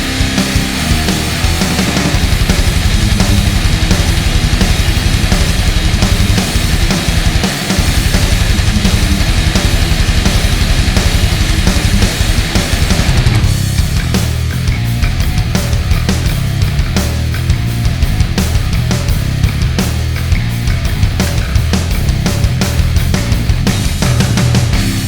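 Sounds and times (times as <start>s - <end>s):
distorted guitars: 0.0s - 25.0s
fast driving drums: 0.0s - 25.0s.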